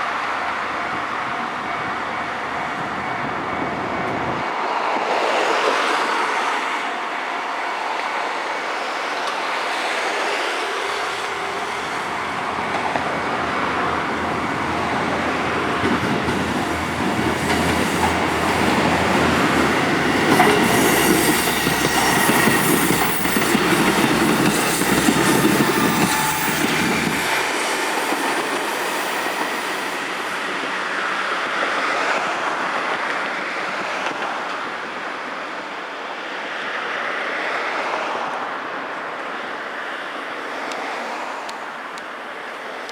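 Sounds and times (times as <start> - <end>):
diesel railcar engine: 0.0 - 36.6
wheels clacking over rail joints: 9.2 - 30.7.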